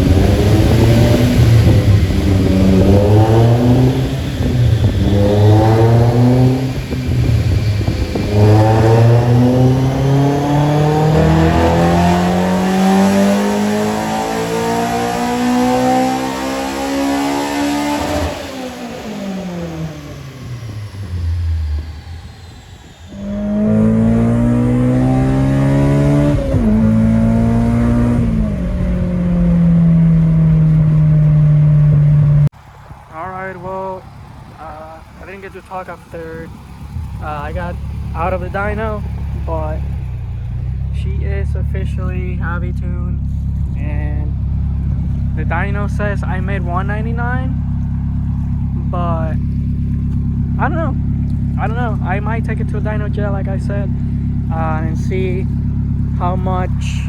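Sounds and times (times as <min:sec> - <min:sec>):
car engine revving on dyno: 0:00.0 - 0:57.0.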